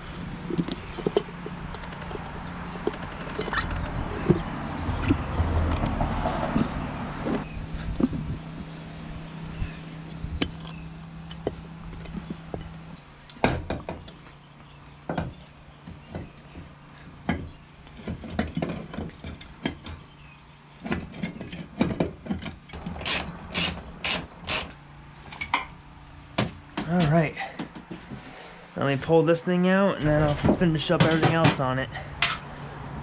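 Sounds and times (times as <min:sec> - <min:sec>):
hand tools clicking and knocking: 0:00.0 - 0:07.5, 0:10.4 - 0:14.2, 0:15.1 - 0:20.1, 0:20.8 - 0:28.0, 0:30.4 - 0:31.6.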